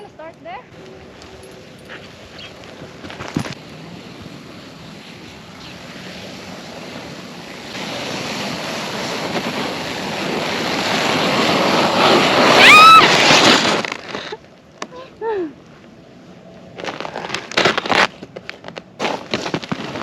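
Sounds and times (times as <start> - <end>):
sled sliding on snow: 0.8 - 14.5, 16.6 - 20.0
short high squeal: 12.5 - 13.7.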